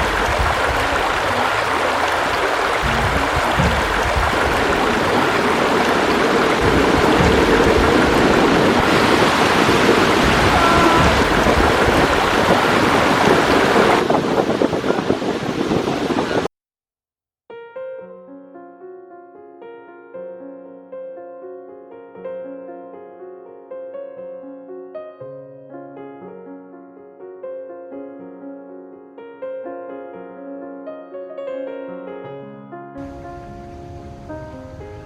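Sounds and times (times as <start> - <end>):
water rushing: 0.0 - 16.5, 33.0 - 35.0.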